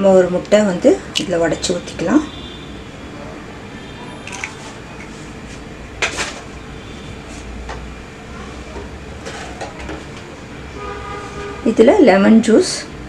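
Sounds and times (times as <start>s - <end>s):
egg cracking on a bowl rim: 4.3s - 4.6s.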